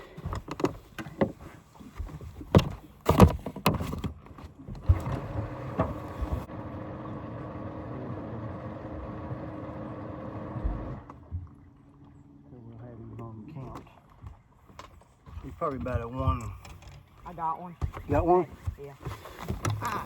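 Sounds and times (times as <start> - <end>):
knocks and clatter on boat: 0.0 - 6.5, 10.6 - 12.2, 13.1 - 20.0
steady motor hum: 5.0 - 13.4.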